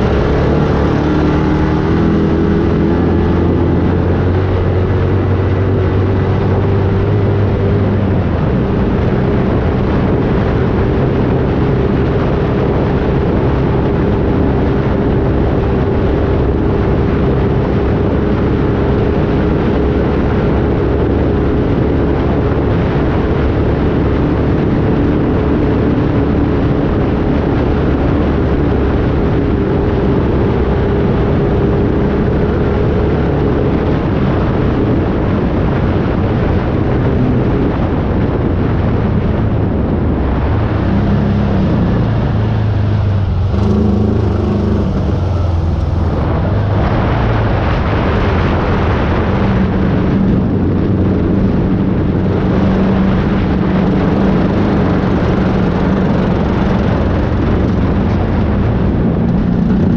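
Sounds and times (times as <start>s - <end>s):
dense rushing noise: 0.0s - 59.9s
vehicle engine running: 0.0s - 59.9s.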